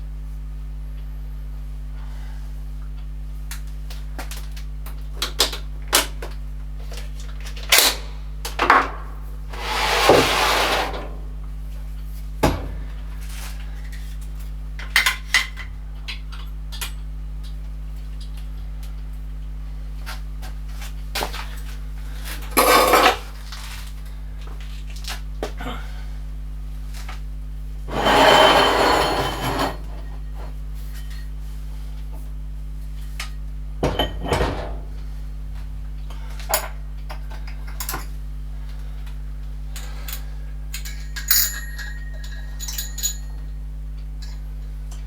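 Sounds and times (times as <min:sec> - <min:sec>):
low electrical hum: 0:00.0 - 0:45.0
scraping rustling noises: 0:09.5 - 0:11.4
metal tools clinking: 0:39.8 - 0:43.5.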